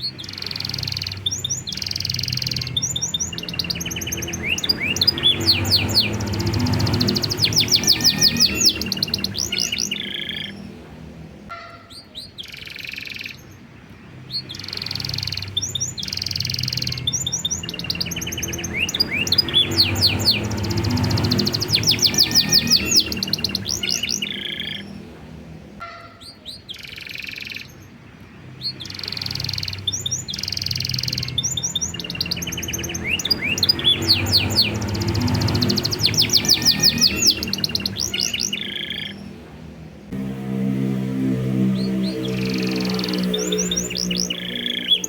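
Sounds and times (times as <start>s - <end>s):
canary singing: 0.0s - 45.0s.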